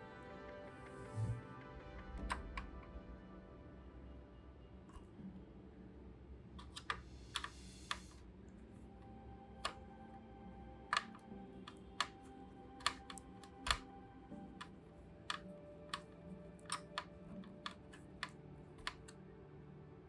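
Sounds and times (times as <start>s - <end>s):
faint background music: 0.0s - 20.0s
plastic parts clicking and tapping: 6.6s - 8.2s, 10.8s - 19.2s.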